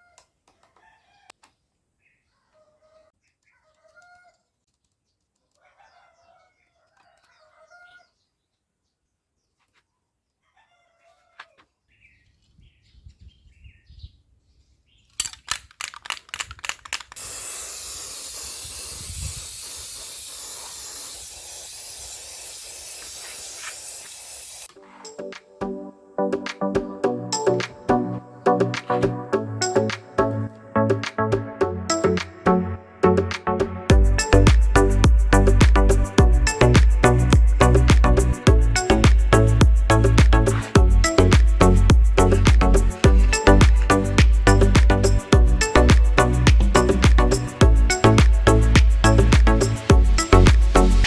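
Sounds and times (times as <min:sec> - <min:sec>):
faint chicken calls: 0:00.0 - 0:04.6, 0:05.4 - 0:08.5, 0:09.6 - 0:12.6
fan blowing air: 0:17.2 - 0:23.2.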